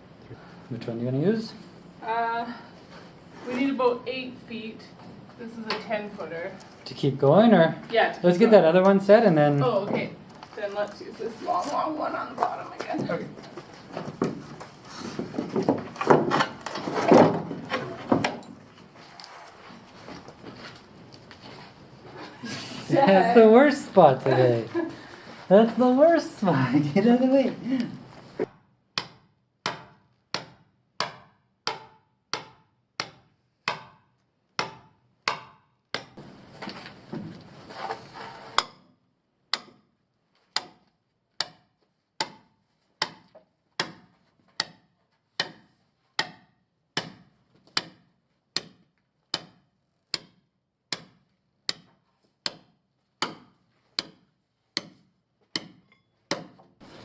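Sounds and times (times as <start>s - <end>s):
rustling: 9.6s - 28.5s, 36.2s - 38.6s.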